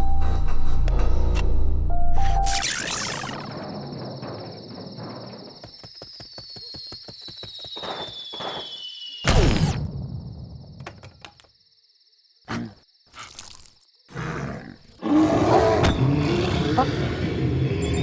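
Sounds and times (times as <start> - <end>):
falling cartoon whistle: 7.4 - 9.8.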